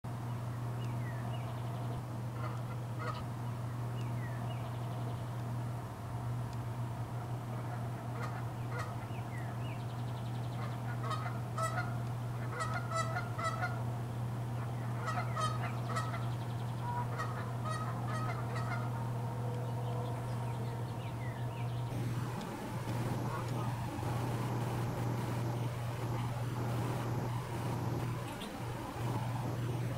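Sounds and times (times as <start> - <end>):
steady low hum: 0.1 - 29.9
geese honking: 2.4 - 3.3, 7.1 - 9.2, 10.6 - 13.9, 14.6 - 21.2, 21.9 - 29.9.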